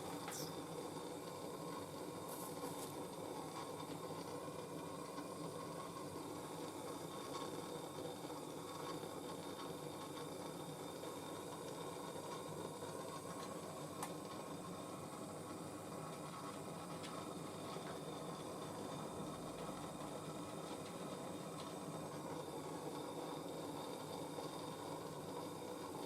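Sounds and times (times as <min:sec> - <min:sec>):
blowtorch flame hissing: 0:00.0 - 0:09.1.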